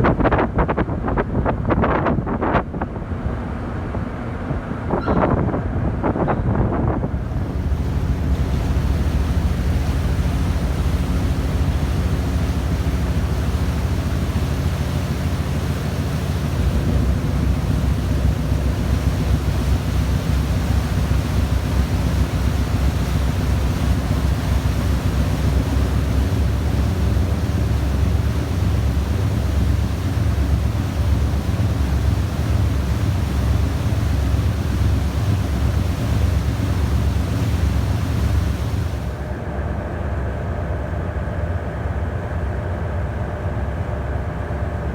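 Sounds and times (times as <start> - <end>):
wind on microphone: 0.0 - 31.2
low engine drone: 0.0 - 44.9.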